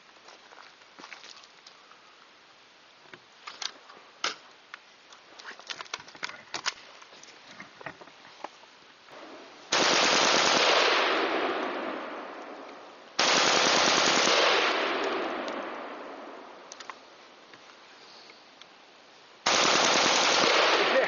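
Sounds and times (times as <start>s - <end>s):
rifle rapid gunshots: 9.7s - 12.0s, 13.2s - 15.7s, 19.5s - 21.0s.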